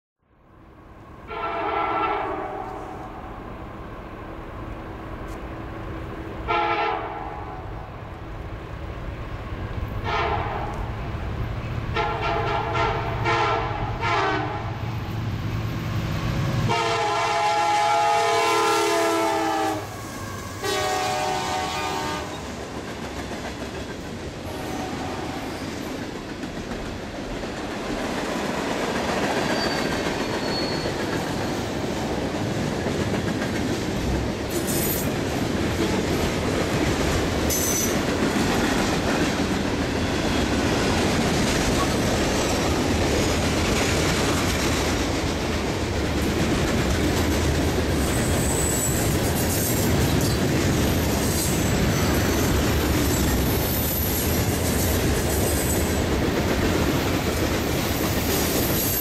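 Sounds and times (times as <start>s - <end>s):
train wheels rumbling on rail: 0.9s - 59.0s
clickety-clack of train wheels: 15.3s - 59.0s
high-pitched wheel squeals: 29.5s - 31.7s, 37.5s - 38.0s, 48.0s - 50.4s.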